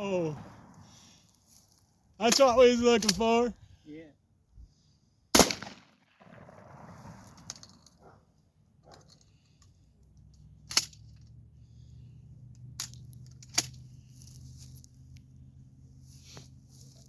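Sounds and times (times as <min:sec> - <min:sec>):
shotgun metallic clicks: 0:08.8 - 0:11.4, 0:12.5 - 0:13.9.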